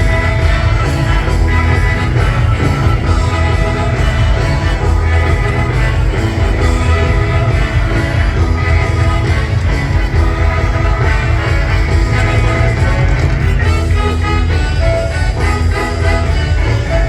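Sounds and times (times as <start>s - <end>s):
live rock band with singer: 0.0s - 17.0s.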